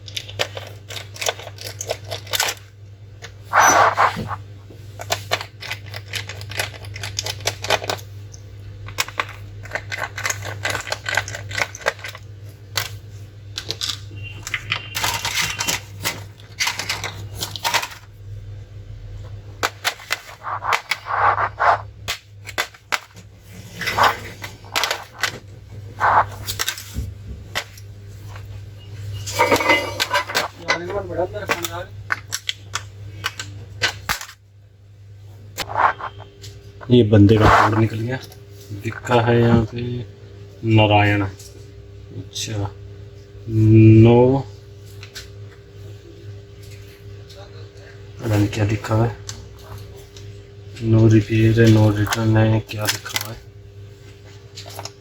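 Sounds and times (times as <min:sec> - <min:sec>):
plastic laptop parts clattering: 0:13.6 - 0:18.0
low hum: 0:28.8 - 0:30.6.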